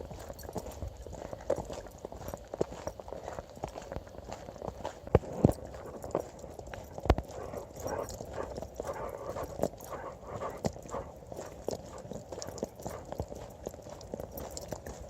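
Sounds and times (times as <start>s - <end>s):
footsteps on a road: 0.0s - 15.0s.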